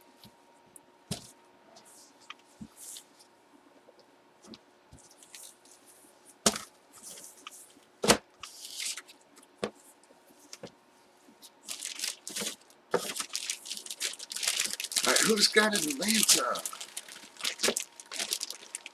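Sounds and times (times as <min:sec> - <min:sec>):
plastic rustling: 0:11.6 - 0:18.9.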